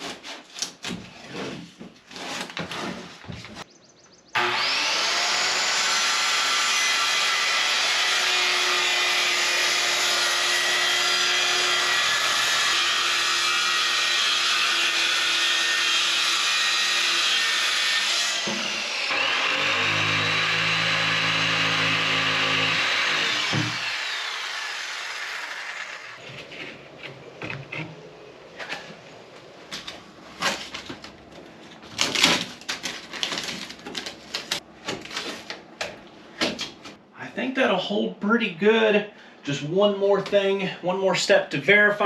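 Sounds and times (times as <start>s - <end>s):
power tool running: 4.4s - 26.2s.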